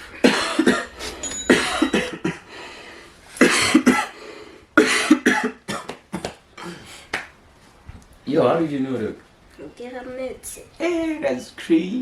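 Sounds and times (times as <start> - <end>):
person coughing hard: 0.1 - 2.4, 3.4 - 4.2, 4.8 - 6.8.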